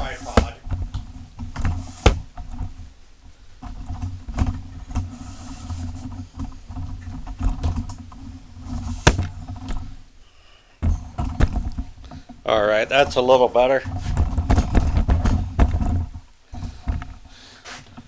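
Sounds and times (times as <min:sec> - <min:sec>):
microphone handling rumble: 0:00.0 - 0:03.0, 0:10.8 - 0:17.2.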